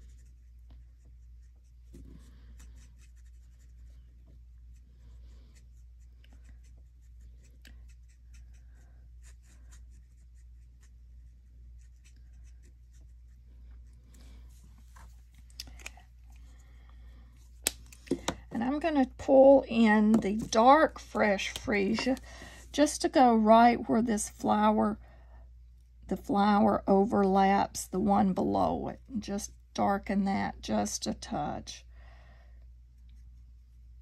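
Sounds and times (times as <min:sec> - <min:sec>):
marker scratching on cardstock: 0:00.0 - 0:04.0, 0:05.5 - 0:13.5.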